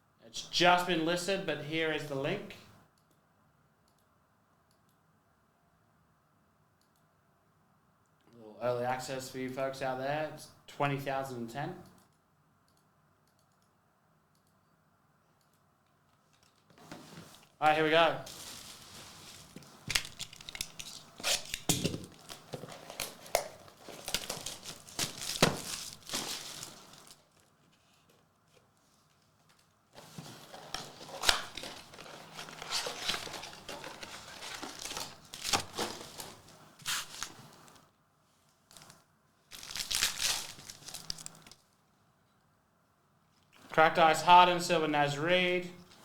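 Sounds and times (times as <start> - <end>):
plastic wrappers tearing and crinkling: 18.2 - 27.4, 30.0 - 37.8, 38.7 - 41.6.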